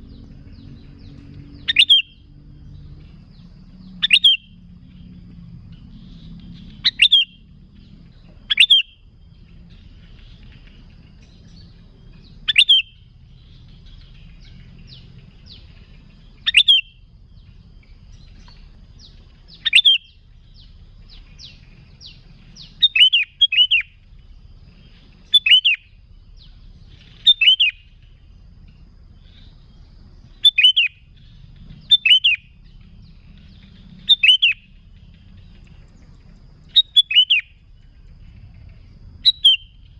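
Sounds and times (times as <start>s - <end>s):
faint bird twittering: 0.0s - 39.9s
low steady hum: 0.0s - 39.9s
bird calling sharp notes: 1.6s - 2.2s, 4.0s - 4.6s, 6.7s - 7.4s, 8.4s - 9.0s, 12.4s - 13.2s, 16.3s - 17.1s, 19.0s - 20.2s, 21.2s - 24.0s, 25.2s - 26.0s, 27.0s - 28.1s, 30.3s - 31.1s, 31.7s - 32.6s, 34.0s - 34.8s, 36.7s - 37.6s, 39.2s - 39.9s.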